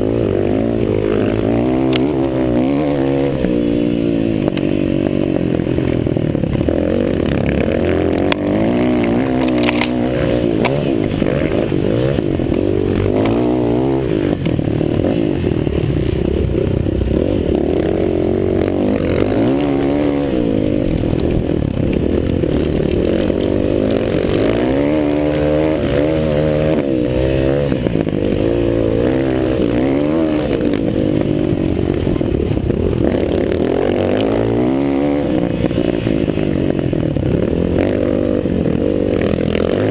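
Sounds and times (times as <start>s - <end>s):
motocross bike engines revving: 0.0s - 39.9s.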